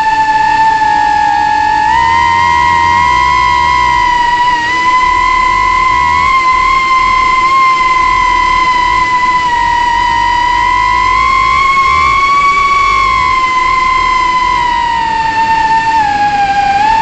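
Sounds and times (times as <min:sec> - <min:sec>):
quadcopter propellers whining: 0:00.0 - 0:17.0.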